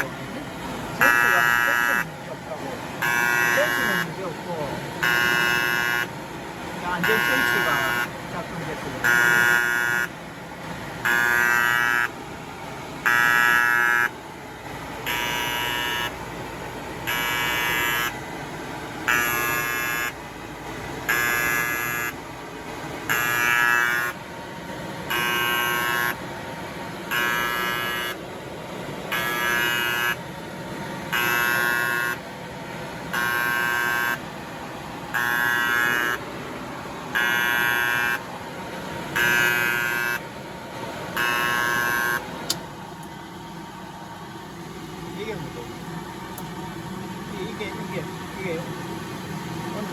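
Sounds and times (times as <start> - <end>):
warning buzzer beeping: 0.0 - 10.3, 11.0 - 12.2, 13.0 - 14.2, 15.0 - 18.4, 19.0 - 20.4, 21.0 - 22.4, 23.0 - 28.2, 29.1 - 30.3, 31.0 - 32.3, 33.0 - 40.4, 41.1 - 42.4.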